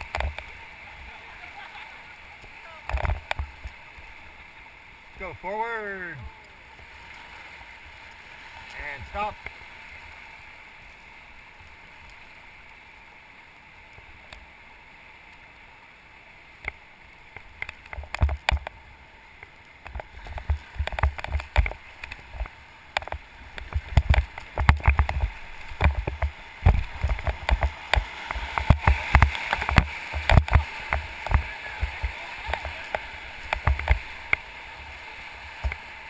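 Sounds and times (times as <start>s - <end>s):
river rushing: 0.0s - 36.0s
sharp splashes of water: 19.8s - 36.0s.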